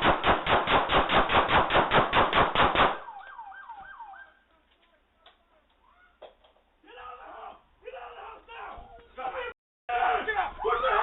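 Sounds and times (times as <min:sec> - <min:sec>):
rapid gunshots: 0:00.0 - 0:03.0.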